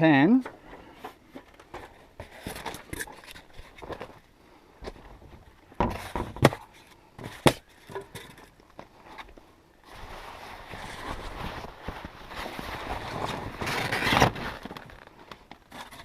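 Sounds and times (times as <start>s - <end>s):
rough scraping: 9.9s - 15.1s.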